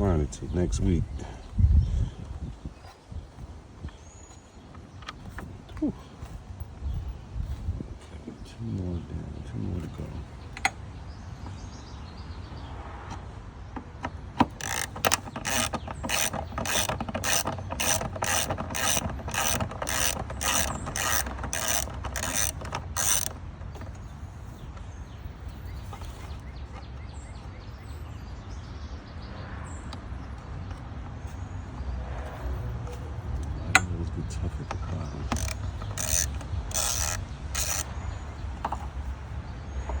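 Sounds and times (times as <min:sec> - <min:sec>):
hand ratchet clicking: 0:14.0 - 0:24.0, 0:35.2 - 0:37.9.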